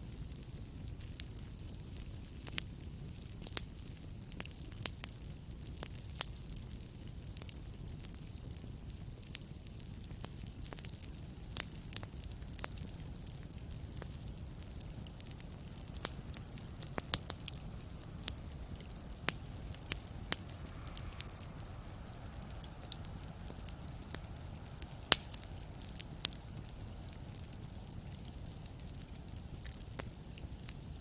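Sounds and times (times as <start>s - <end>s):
wood fire crackling: 0.0s - 31.0s
sharp pops of fire: 9.3s - 30.7s.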